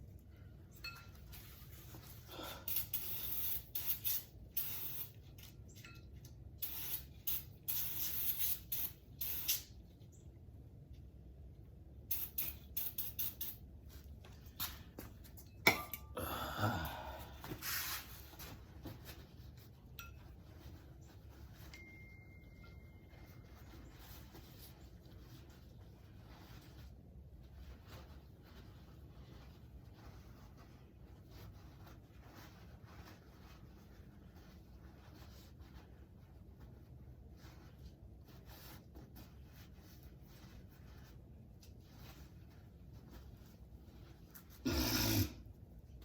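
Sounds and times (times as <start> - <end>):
aerosol spray bursts: 2.7 - 5.1, 6.6 - 9.7, 12.1 - 13.6.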